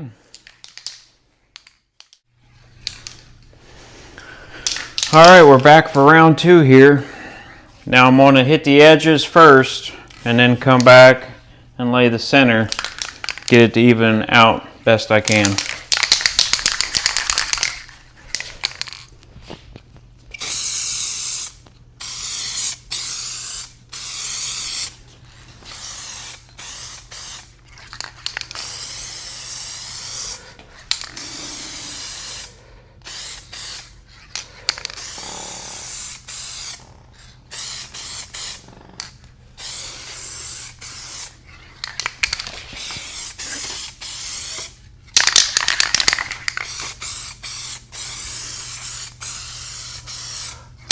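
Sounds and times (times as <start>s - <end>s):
spray can hissing: 20.4s - 25.0s, 25.6s - 27.5s, 28.2s - 34.0s, 34.8s - 36.8s, 37.5s - 50.6s.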